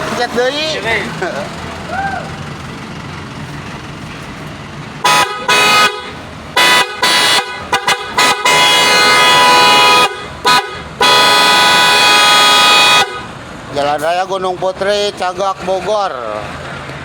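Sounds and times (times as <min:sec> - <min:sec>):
car horn honking: 0:05.0 - 0:13.4.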